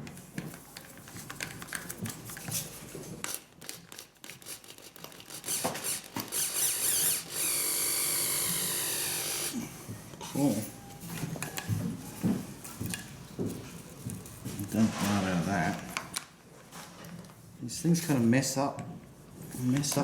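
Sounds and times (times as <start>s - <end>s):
cordless drill running: 5.5s - 9.6s.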